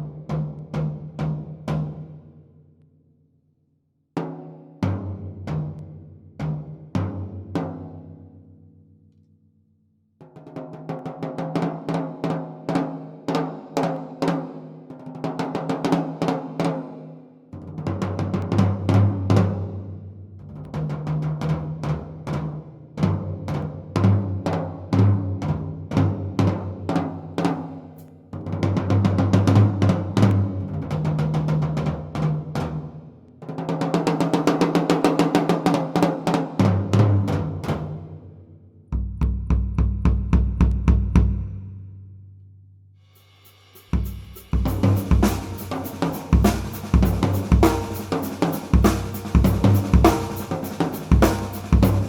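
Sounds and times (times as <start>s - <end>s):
bass drum: 38.9s - 41.8s, 43.8s - 52.0s
drum rolls on toms: 39.0s - 41.6s, 43.5s - 52.0s
snare drum: 43.2s - 52.0s.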